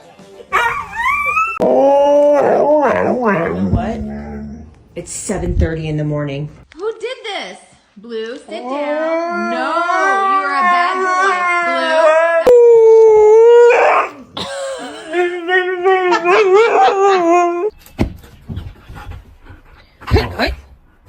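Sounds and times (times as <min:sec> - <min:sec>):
dog howling: 0:00.6 - 0:04.7, 0:08.6 - 0:14.2, 0:15.4 - 0:17.7.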